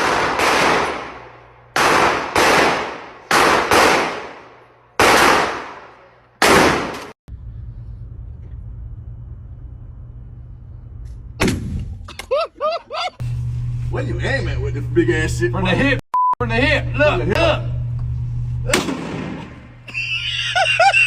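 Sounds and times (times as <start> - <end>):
shotgun blasts: 0.0 - 7.2, 11.4 - 11.9, 18.7 - 19.7
low rumble: 7.3 - 12.1.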